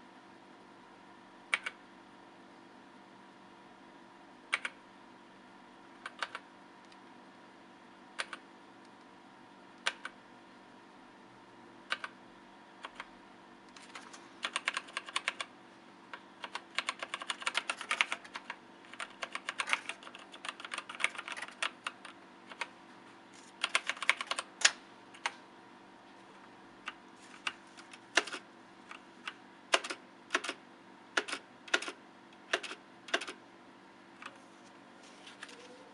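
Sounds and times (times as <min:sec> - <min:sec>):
faint steady hum: 0:00.0 - 0:35.9
mechanical keyboard typing: 0:01.5 - 0:01.8, 0:04.5 - 0:04.8, 0:06.0 - 0:06.4, 0:08.2 - 0:08.4, 0:09.8 - 0:10.2, 0:11.9 - 0:12.2, 0:12.8 - 0:13.1, 0:13.7 - 0:15.5, 0:16.4 - 0:22.7, 0:23.6 - 0:24.6, 0:26.9 - 0:30.6, 0:31.2 - 0:33.4.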